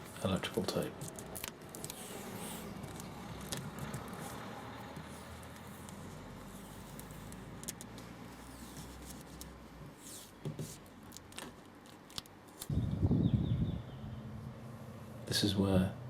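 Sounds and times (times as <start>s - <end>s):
tape rustling: 0.0s - 12.7s.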